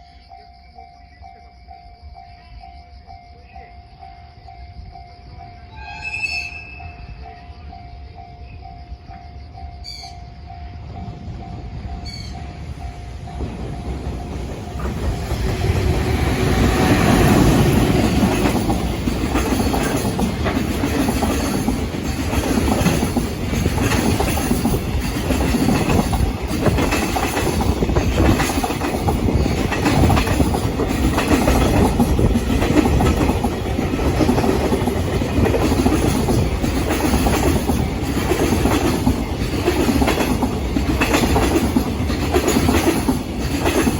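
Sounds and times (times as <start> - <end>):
train wheels clattering over rail joints: 12.5 - 43.9.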